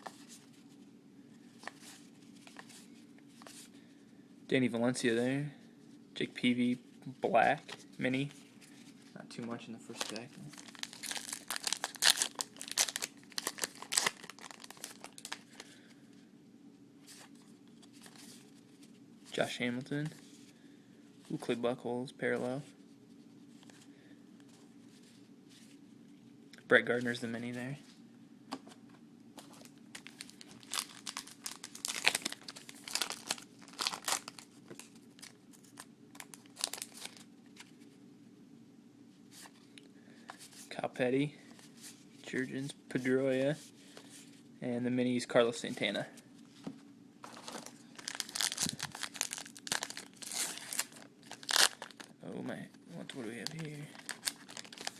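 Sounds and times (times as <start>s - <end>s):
wrapper crinkling and tearing: 9.9s - 15.7s, 29.6s - 37.3s, 47.2s - 52.1s, 53.2s - 54.9s
cards being handled: 46.6s - 52.0s.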